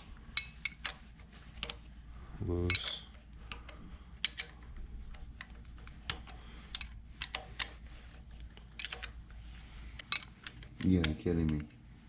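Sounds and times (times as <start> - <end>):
wrench clicking on metal bolts: 0.4 - 1.0, 2.7 - 3.6, 4.2 - 4.6, 6.1 - 7.8, 8.6 - 9.2, 10.0 - 11.7.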